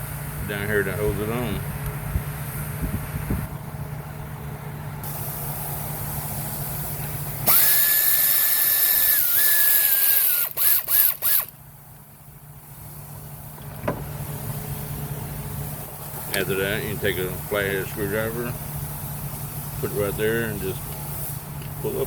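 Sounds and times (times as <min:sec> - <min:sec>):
power driver whining: 0:07.4 - 0:11.6.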